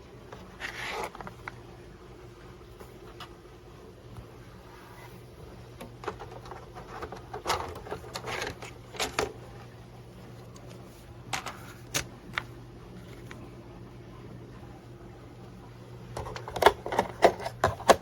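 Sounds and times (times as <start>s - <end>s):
steady low hum: 0.0s - 18.0s
handling clicks and rustles: 5.7s - 13.5s.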